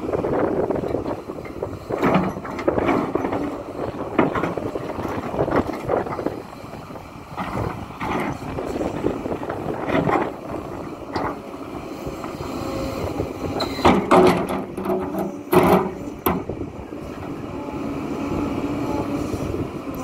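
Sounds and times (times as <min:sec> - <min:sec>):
excavator engine and hydraulics: 0:00.0 - 0:20.0
loud knocks and scrapes: 0:13.6 - 0:16.5.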